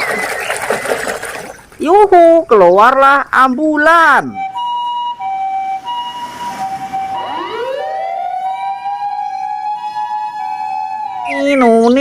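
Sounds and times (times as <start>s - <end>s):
two-tone ambulance siren: 4.2s - 12.0s
rising siren wail: 4.3s - 12.0s.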